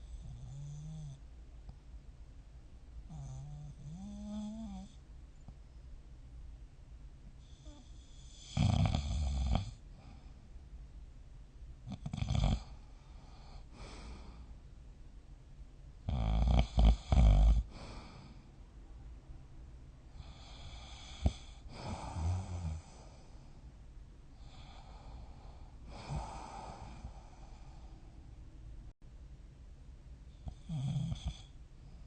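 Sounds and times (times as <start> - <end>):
person snoring: 20.2 - 23.1, 24.4 - 27.9.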